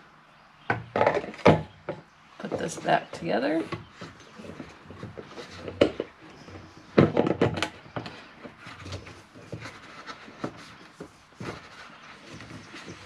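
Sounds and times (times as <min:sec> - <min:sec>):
bottle knocking and clattering: 0:06.9 - 0:08.2.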